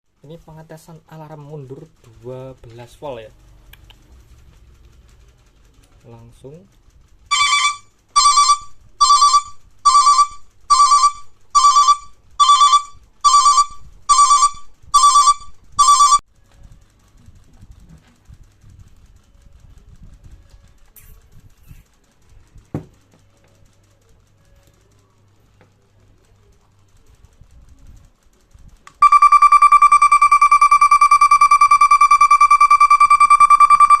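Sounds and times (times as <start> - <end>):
vehicle reversing alarm beeping: 7.3 - 16.2, 29.0 - 34.0.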